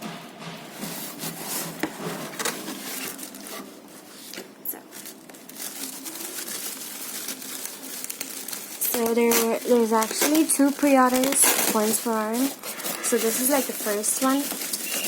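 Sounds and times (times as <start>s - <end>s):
cardboard box rubbing and scraping: 0.8s - 3.8s, 9.2s - 15.0s.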